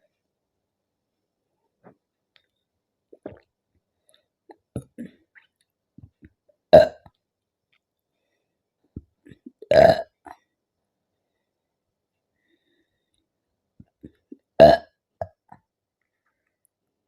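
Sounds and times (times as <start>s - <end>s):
woman burping loudly: 9.6s - 10.4s, 14.6s - 15.0s.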